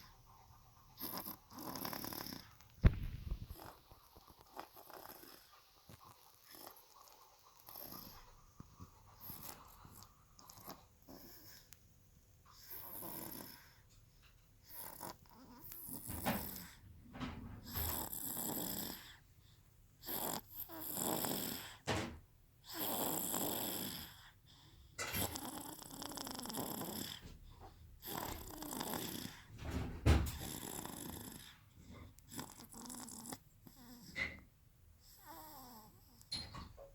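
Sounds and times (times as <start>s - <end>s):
baby snoring: 1.0s - 8.3s, 9.2s - 11.8s, 12.6s - 13.8s, 14.6s - 16.8s, 17.6s - 19.2s, 20.0s - 21.8s, 22.6s - 24.4s, 25.0s - 27.3s, 28.0s - 29.5s, 30.3s - 34.4s, 35.0s - 36.3s
short low thump: 2.8s - 3.6s.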